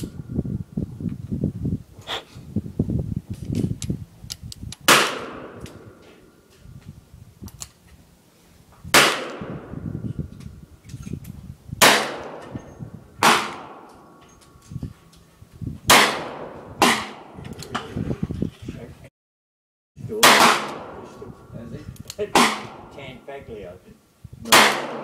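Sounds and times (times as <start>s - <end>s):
revolver shots with echo: 24.5s - 25.0s.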